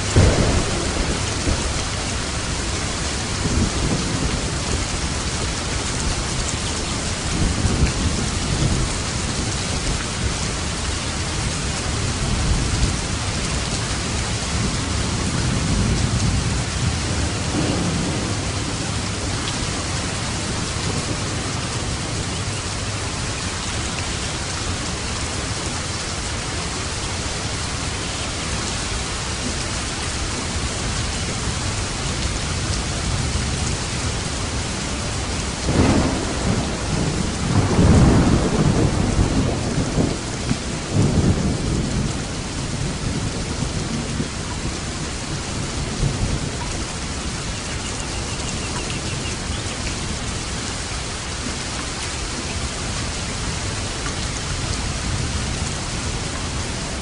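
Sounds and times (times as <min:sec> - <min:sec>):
thunder rumbling: 0:00.0 - 0:10.7, 0:11.4 - 0:25.9, 0:30.4 - 0:47.5
heavy rain hissing: 0:00.0 - 0:57.0.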